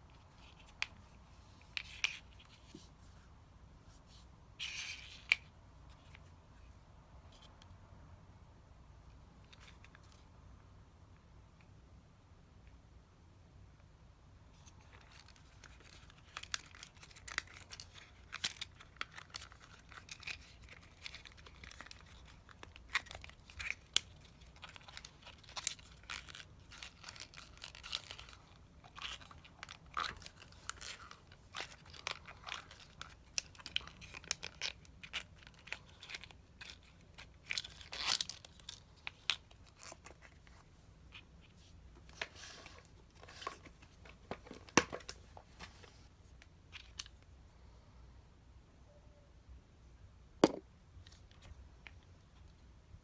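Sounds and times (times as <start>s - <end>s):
crinkling: 14.5s - 47.2s.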